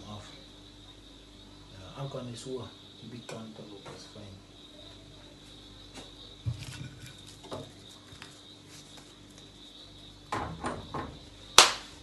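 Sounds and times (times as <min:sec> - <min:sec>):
loud sharp clack: 0:11.6 - 0:11.9.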